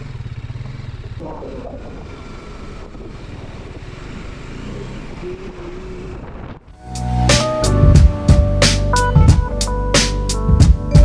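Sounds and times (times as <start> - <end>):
motorcycle riding: 0.0 - 7.3.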